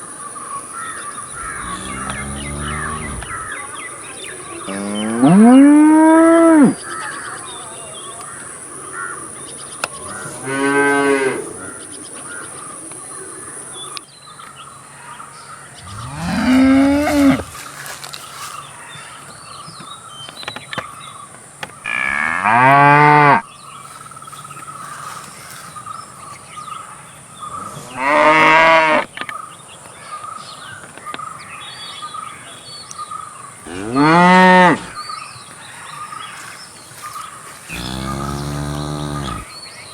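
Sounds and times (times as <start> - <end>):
cow mooing: 1.3 - 3.6, 15.8 - 17.5, 33.7 - 35.0, 37.7 - 39.5.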